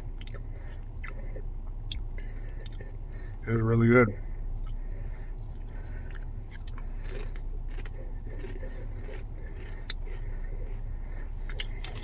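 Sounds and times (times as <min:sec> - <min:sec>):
chewing crisps crunching: 0:05.5 - 0:12.0.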